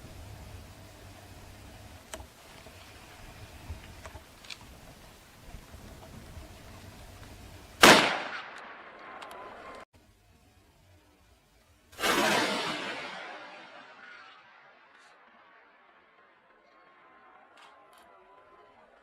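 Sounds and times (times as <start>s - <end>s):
gunshot with echo: 7.8s - 9.2s, 12.0s - 13.8s.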